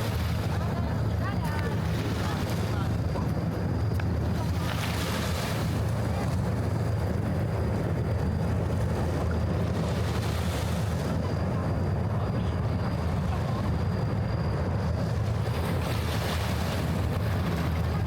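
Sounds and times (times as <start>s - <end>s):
city ambience rumble: 0.0s - 18.0s.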